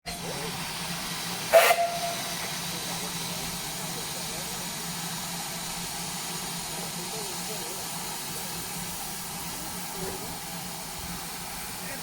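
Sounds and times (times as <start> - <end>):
steam hissing: 0.1 - 12.0
steam locomotive whistle: 1.5 - 2.5.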